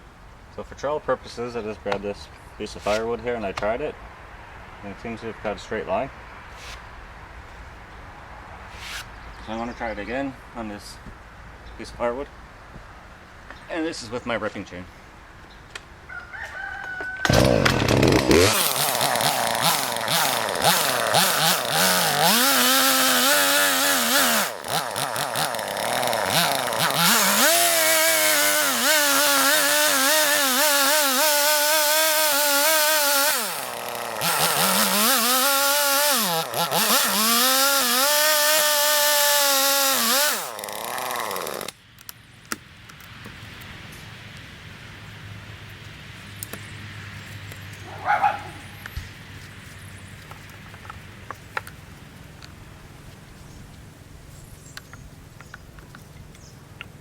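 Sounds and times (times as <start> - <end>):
chainsaw cutting wood: 17.2 - 41.8.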